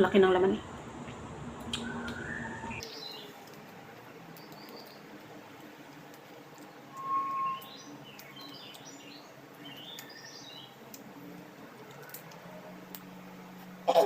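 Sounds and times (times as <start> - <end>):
low steady hum: 0.0 - 14.0
birds chirping: 1.6 - 13.8
loud whistled bird note: 1.8 - 3.1, 6.9 - 7.9.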